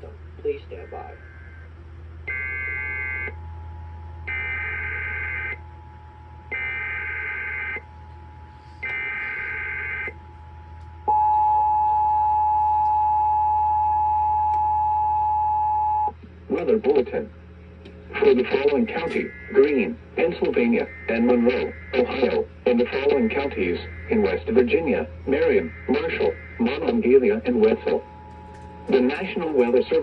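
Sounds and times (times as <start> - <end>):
screechy data bursts: 18.2 - 30.0.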